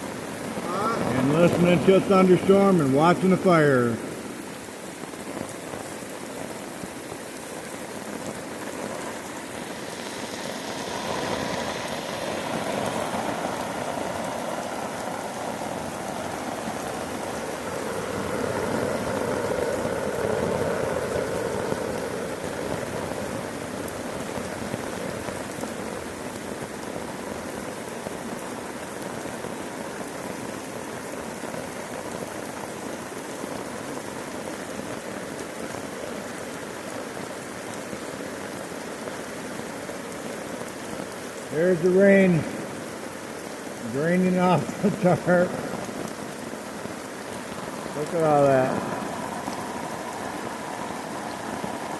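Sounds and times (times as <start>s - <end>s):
heavy rain on a tarp: 0.0s - 51.9s.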